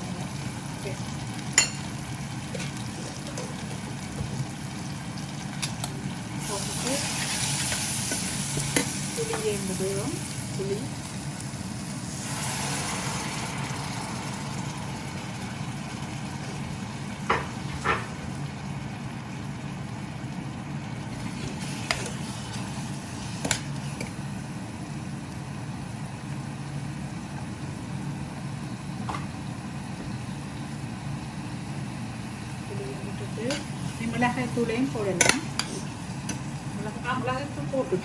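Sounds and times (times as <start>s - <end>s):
steady low hum: 0.0s - 38.0s
spoon knocking against pan: 35.2s - 35.7s.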